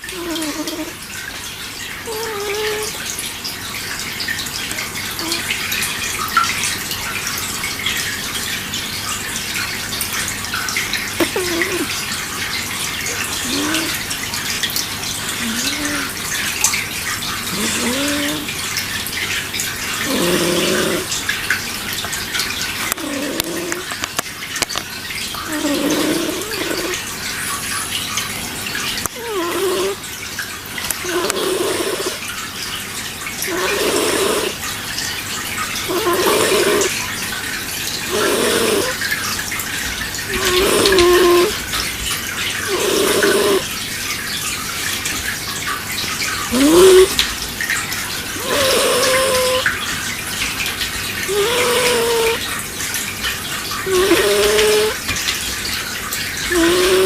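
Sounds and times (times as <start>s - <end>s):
hissy snoring with wavering hum: 0.0s - 1.0s, 2.1s - 3.0s, 5.2s - 5.5s, 11.2s - 12.0s, 13.1s - 14.1s, 15.3s - 16.2s, 17.4s - 18.6s, 20.0s - 21.3s, 22.8s - 23.9s, 25.4s - 27.0s, 29.1s - 30.0s, 30.9s - 32.2s, 33.4s - 34.6s, 35.8s - 37.0s, 38.0s - 39.1s, 40.3s - 41.6s, 42.6s - 43.7s, 46.5s - 47.2s, 48.4s - 49.7s, 51.2s - 52.4s, 53.8s - 55.1s, 56.4s - 57.0s.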